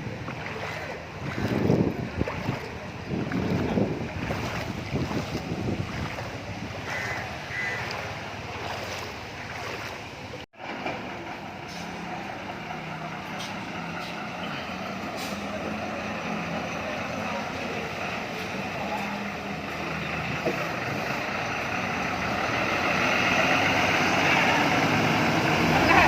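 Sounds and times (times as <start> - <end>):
bus diesel engine running: 0.0 - 26.0
road noise: 0.0 - 26.0.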